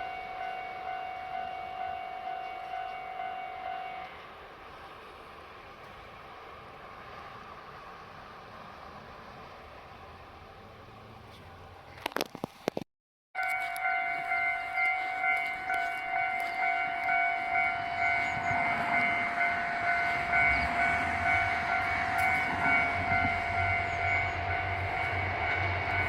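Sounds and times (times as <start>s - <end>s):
level-crossing alarm bell tones: 0.0s - 4.1s, 13.4s - 26.0s
train rumble: 0.0s - 12.6s, 13.4s - 26.0s.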